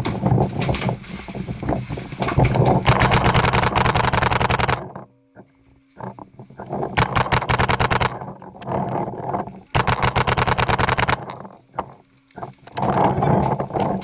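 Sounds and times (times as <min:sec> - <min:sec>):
paintball markers firing bursts: 0:02.8 - 0:04.9, 0:07.0 - 0:08.2, 0:09.8 - 0:11.4.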